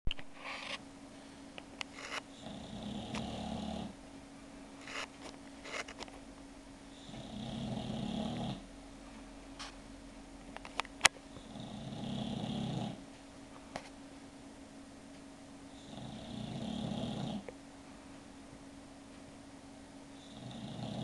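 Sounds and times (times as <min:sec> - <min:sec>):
pet snoring: 0:02.1 - 0:04.0, 0:06.9 - 0:08.7, 0:11.3 - 0:13.0, 0:15.7 - 0:17.5, 0:20.2 - 0:21.0.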